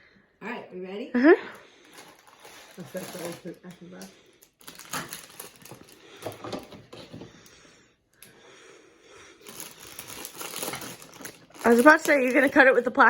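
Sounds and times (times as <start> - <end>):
plastic wrapping crinkling: 1.7 - 7.1, 9.4 - 13.0.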